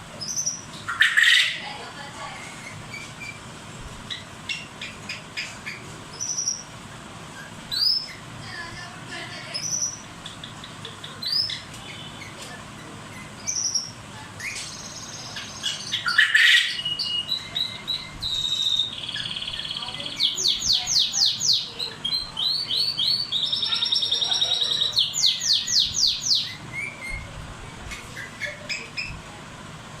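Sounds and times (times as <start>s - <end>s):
pet birds chirping and singing: 0.2s - 3.4s, 4.0s - 6.8s, 7.4s - 29.2s.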